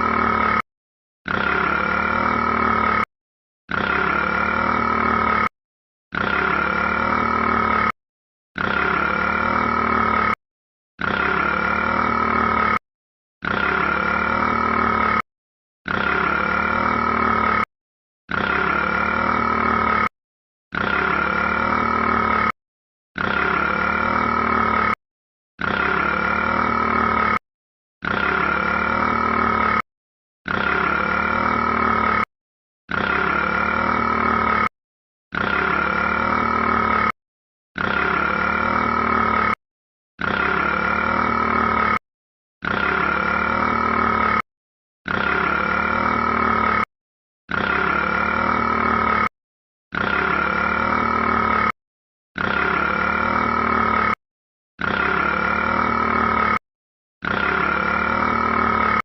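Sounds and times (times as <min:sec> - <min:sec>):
burp-like sound: 0:01.2 - 0:03.1, 0:03.7 - 0:05.5, 0:06.1 - 0:08.0, 0:08.6 - 0:10.4, 0:11.0 - 0:12.8, 0:13.4 - 0:15.2, 0:15.8 - 0:17.7, 0:18.3 - 0:22.6, 0:23.2 - 0:25.0, 0:25.6 - 0:27.4, 0:28.0 - 0:29.8, 0:30.4 - 0:32.3, 0:32.9 - 0:34.7, 0:35.3 - 0:37.2, 0:37.8 - 0:39.6, 0:40.2 - 0:42.0, 0:42.6 - 0:44.4, 0:45.1 - 0:46.9, 0:47.5 - 0:49.3, 0:49.9 - 0:51.8, 0:52.4 - 0:54.2, 0:54.8 - 0:56.6, 0:57.3 - 0:59.0.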